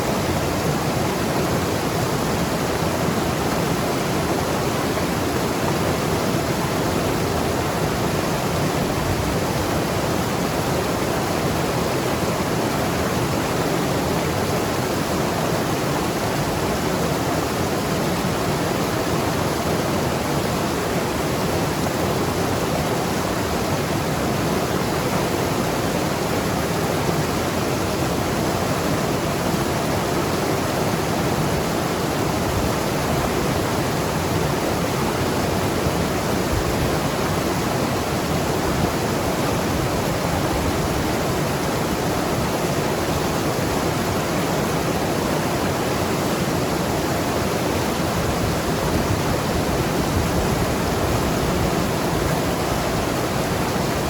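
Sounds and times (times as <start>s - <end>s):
river rushing over rocks: 0.0s - 54.0s.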